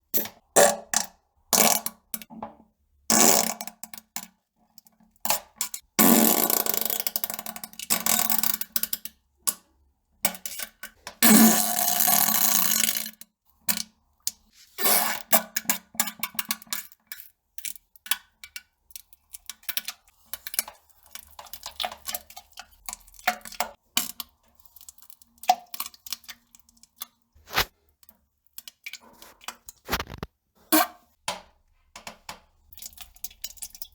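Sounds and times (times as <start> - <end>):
farting sputters and plops: 29.9 - 30.3.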